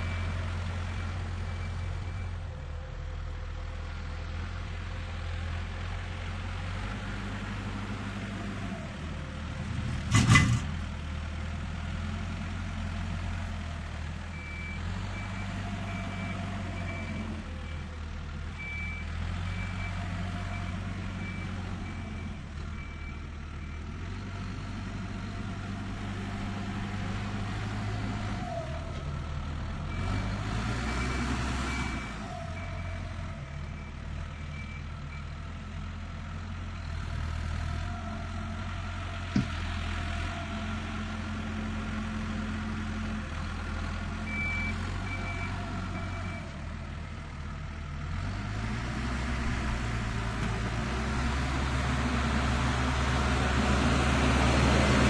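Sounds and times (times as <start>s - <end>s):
tractor engine rumbling: 0.0s - 55.0s
reversing alarm beeping: 44.3s - 46.6s.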